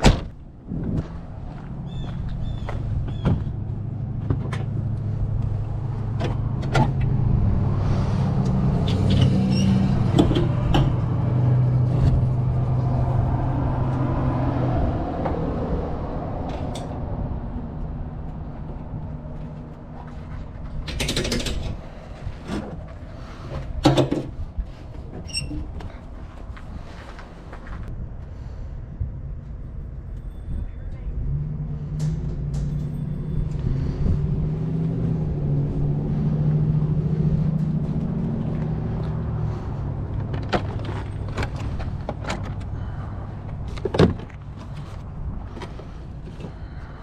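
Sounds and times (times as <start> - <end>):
car engine droning: 0.0 - 20.9, 29.8 - 47.0.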